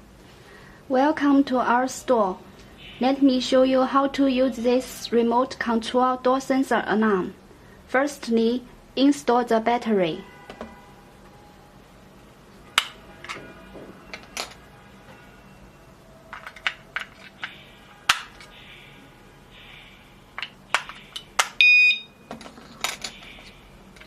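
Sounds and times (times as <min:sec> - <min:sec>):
loud electronic beep: 0:21.6 - 0:22.2.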